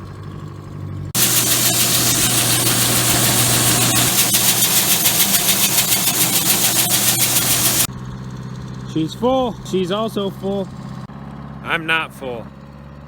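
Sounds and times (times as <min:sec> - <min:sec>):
engine running: 0:01.2 - 0:07.9
loud rushing noise: 0:01.2 - 0:07.9.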